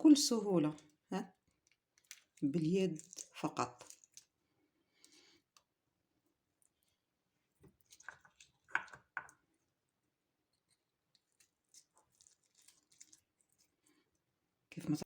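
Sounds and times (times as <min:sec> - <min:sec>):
garlic skins squishing and tearing: 0:00.7 - 0:04.4, 0:07.6 - 0:09.4, 0:10.6 - 0:14.1.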